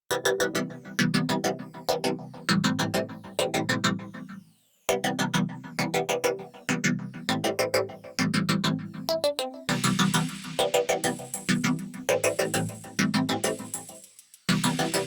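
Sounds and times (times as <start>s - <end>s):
electronic music with fast beat: 9.7s - 15.0s.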